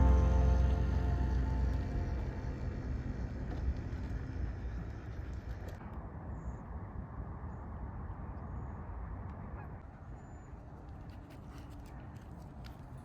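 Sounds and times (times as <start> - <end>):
low rushing noise: 0.0 - 5.6.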